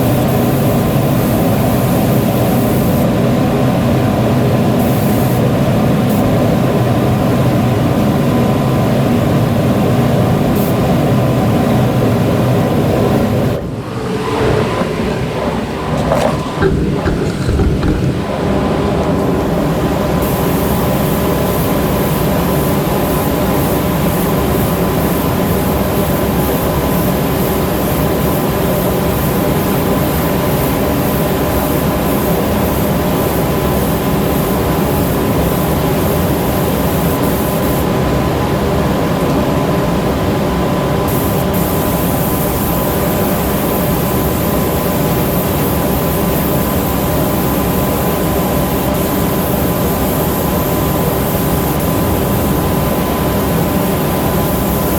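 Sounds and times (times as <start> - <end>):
machine running with hum: 11.1 - 26.0.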